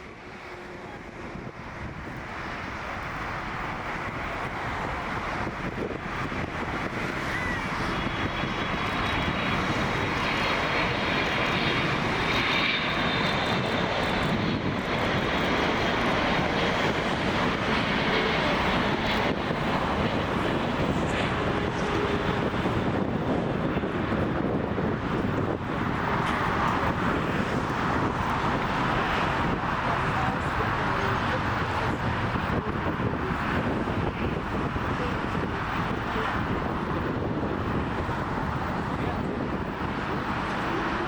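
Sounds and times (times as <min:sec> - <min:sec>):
jet engines running: 0:00.0 - 0:41.0.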